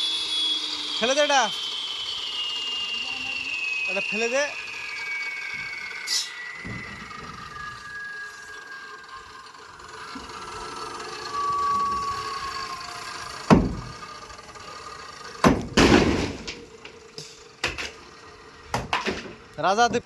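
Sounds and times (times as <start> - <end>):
machine whine falling in pitch: 0.0 - 20.0
loud sharp bang: 15.4 - 16.6.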